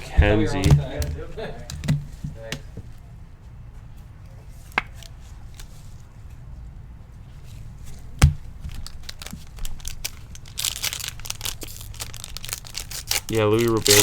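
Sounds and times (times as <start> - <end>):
cards clicking: 7.9 - 14.0
foil wrapper tearing and crinkling: 8.2 - 14.0.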